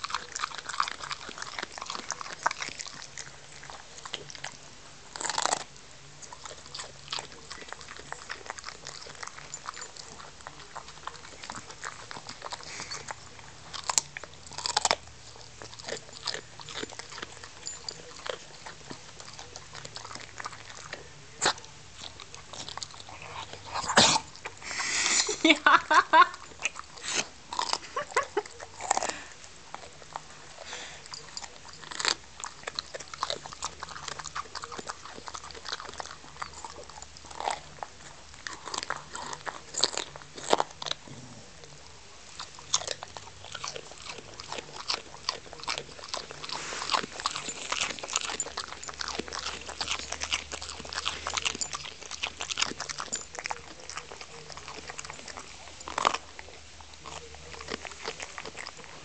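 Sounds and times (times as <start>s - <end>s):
dog crunching broccoli stem: 0.0s - 59.0s.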